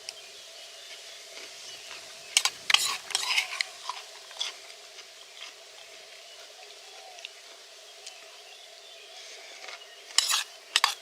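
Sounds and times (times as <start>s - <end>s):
cutlery clinking and scraping on plate: 2.4s - 4.5s, 10.1s - 11.0s.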